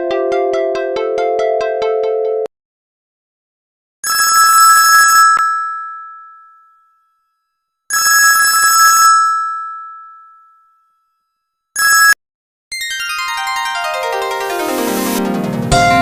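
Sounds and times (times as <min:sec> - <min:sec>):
trilling phone ringtone: 0:04.0 - 0:15.2.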